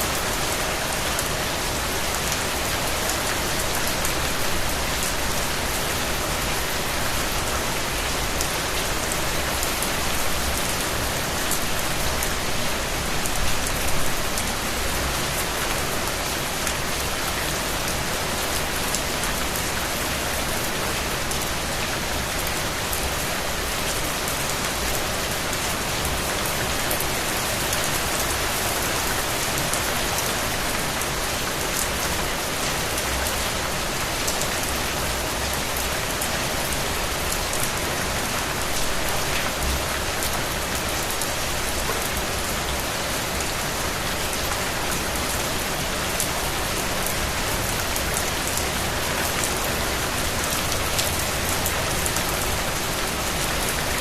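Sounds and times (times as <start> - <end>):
rain patter and hiss: 0.0 - 54.0.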